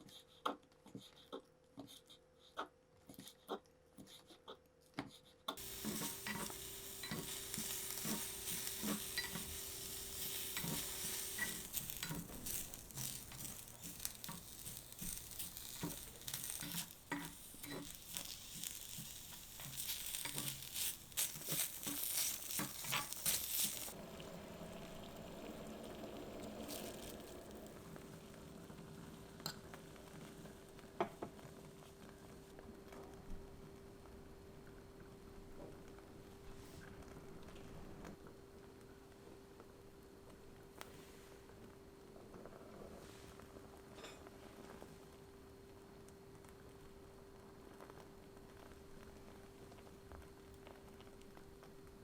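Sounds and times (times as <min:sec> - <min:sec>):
utensil clicking and scraping: 0:05.6 - 0:24.0
food sizzling in a pan: 0:05.6 - 0:32.2.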